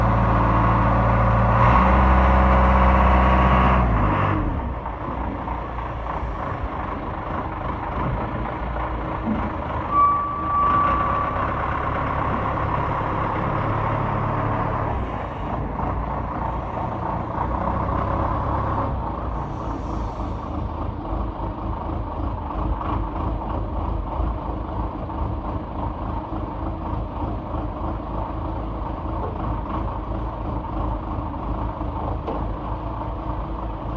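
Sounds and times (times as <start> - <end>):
heavy equipment engine running: 0.0 - 33.9
short beep: 9.9 - 11.4.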